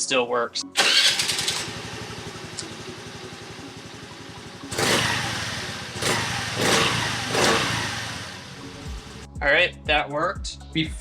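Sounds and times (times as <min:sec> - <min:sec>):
engine throttle blips: 0:00.8 - 0:09.2
small engine idling: 0:00.8 - 0:09.3.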